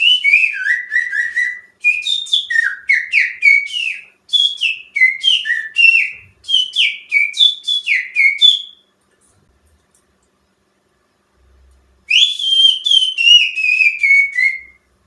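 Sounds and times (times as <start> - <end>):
finger whistling birdsong: 0.0 - 9.0, 12.1 - 14.9.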